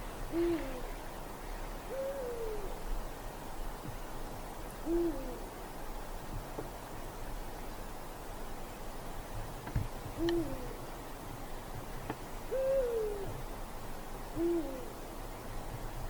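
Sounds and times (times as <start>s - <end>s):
owl hooting: 0.3s - 0.9s, 1.9s - 2.8s, 4.8s - 5.5s, 10.2s - 10.8s, 12.5s - 13.4s, 14.4s - 15.0s.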